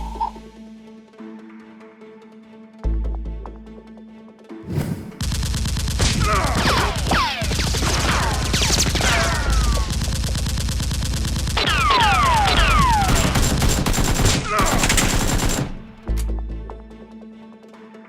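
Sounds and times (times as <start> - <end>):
automatic gunfire: 5.2 - 16.0.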